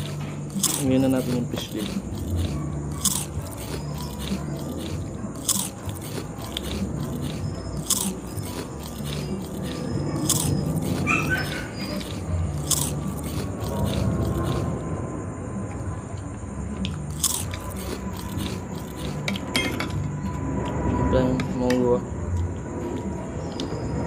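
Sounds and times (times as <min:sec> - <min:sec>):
food crunching: 0:00.0 - 0:14.8, 0:16.9 - 0:19.4
person chewing food: 0:00.0 - 0:14.8, 0:16.9 - 0:19.4.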